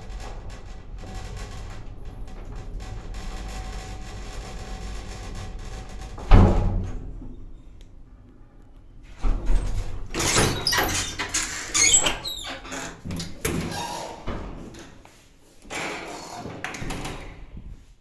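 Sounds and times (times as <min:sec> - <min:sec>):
lift doors sliding and banging: 0:00.0 - 0:08.3, 0:08.9 - 0:17.8
high squeak: 0:10.2 - 0:12.8.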